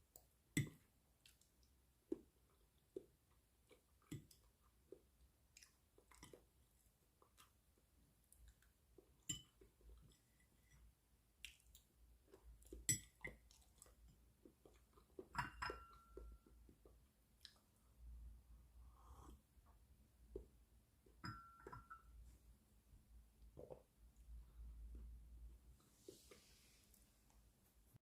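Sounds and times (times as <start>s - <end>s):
quiet chewing: 0.0s - 18.0s.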